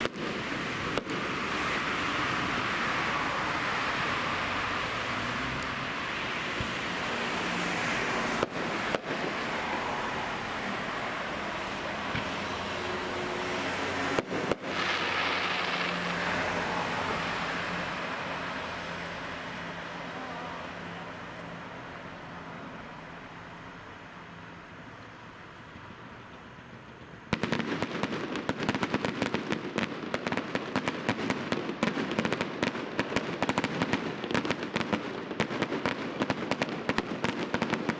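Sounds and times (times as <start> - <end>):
fireworks spraying hiss: 0.0 - 19.6.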